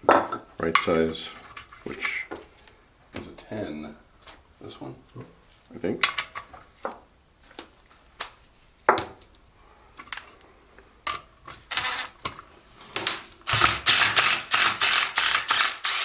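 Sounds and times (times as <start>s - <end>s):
socket ratchet clicking: 13.5s - 16.0s.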